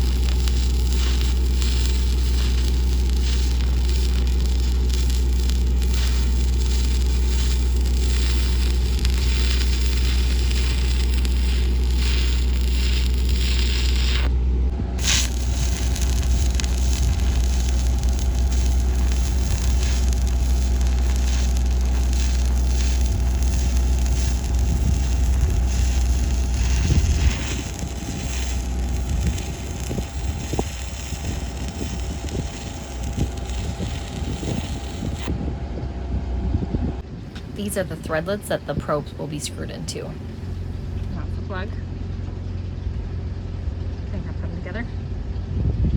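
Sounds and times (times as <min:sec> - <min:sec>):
arc welding crackling: 0:00.0 - 0:35.3, 0:37.2 - 0:41.2
welding equipment hum: 0:00.0 - 0:35.4, 0:37.2 - 0:41.2.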